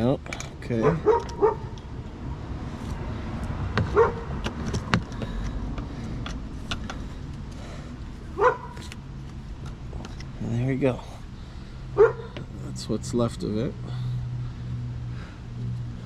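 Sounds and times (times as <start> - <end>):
dog barking: 0.8 - 1.7, 3.9 - 4.3, 8.4 - 8.7, 12.0 - 12.4.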